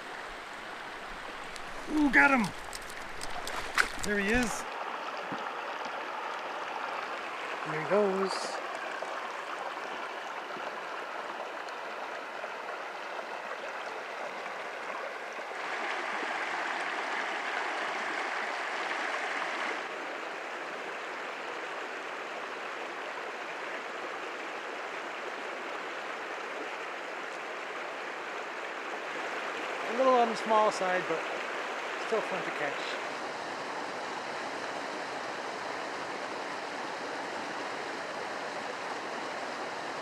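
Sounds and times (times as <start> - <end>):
stream running over rocks: 0.0 - 40.0.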